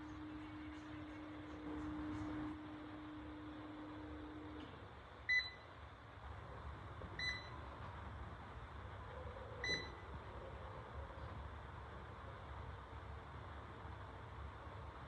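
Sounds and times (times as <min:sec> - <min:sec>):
low steady hum: 0:00.0 - 0:15.0
short electronic beeps: 0:05.3 - 0:05.6, 0:07.2 - 0:07.6, 0:09.6 - 0:10.0.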